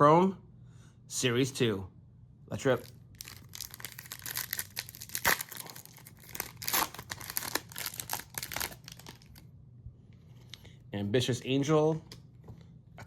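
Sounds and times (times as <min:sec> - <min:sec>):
foil wrapper tearing and crinkling: 0:02.7 - 0:09.4.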